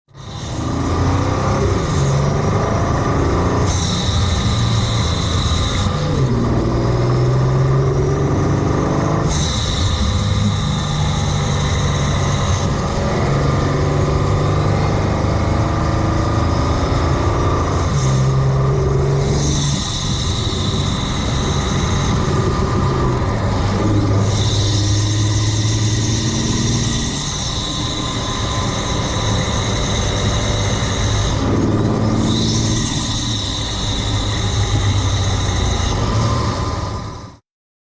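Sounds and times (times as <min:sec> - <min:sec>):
deep truck-like engine revving: 0:00.1 - 0:37.4
loud intake hiss: 0:18.2 - 0:36.0.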